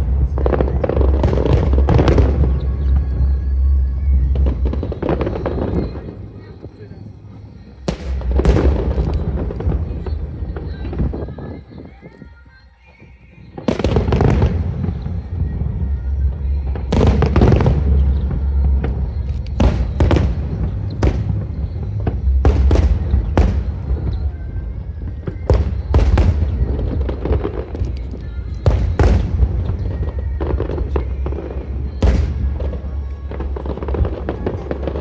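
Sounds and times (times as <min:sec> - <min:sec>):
fireworks shells bursting: 0:04.4 - 0:12.3, 0:13.5 - 0:35.0
low rumble: 0:14.1 - 0:35.0.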